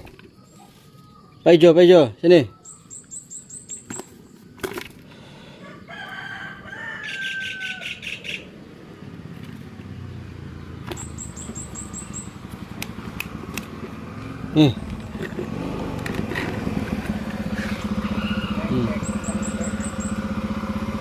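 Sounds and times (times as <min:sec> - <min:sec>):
short bird calls: 0:06.8 - 0:08.6.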